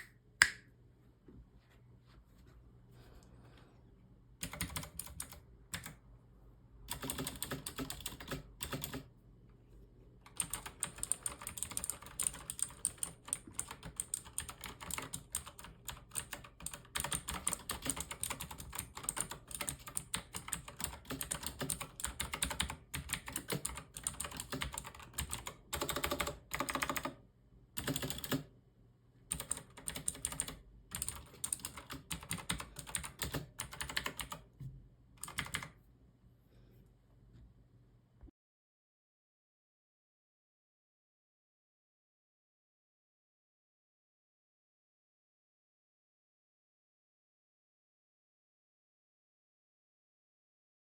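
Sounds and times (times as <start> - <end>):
clicky mechanical keyboard typing: 4.4 - 6.0, 6.9 - 9.1, 10.3 - 27.2, 27.8 - 28.5, 29.3 - 34.4, 35.2 - 35.7.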